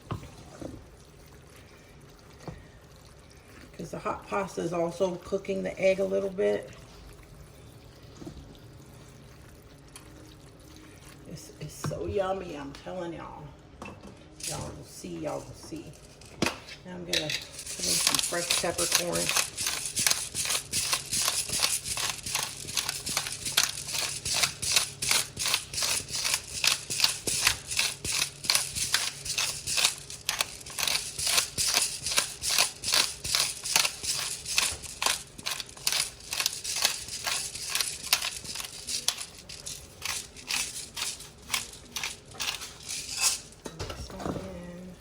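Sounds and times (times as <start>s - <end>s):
pepper mill grinding: 14.4s - 14.8s, 15.9s - 43.7s.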